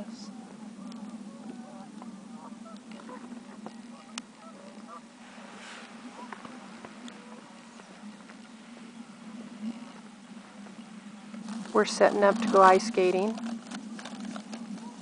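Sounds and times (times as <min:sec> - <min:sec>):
lake ice chirping and pinging: 0:00.0 - 0:15.0
steady low hum: 0:00.0 - 0:15.0
hissing rush: 0:05.1 - 0:13.2.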